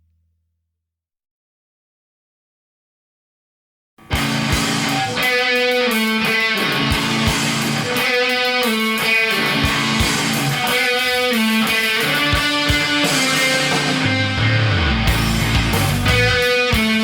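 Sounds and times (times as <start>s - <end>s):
instrumental guitar rock music: 4.0s - 17.0s.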